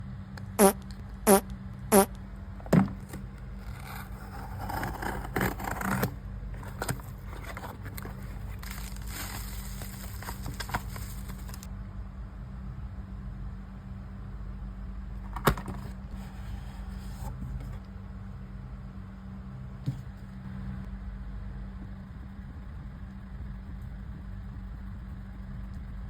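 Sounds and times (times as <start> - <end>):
packaging rustling and scraping: 3.1 - 11.7.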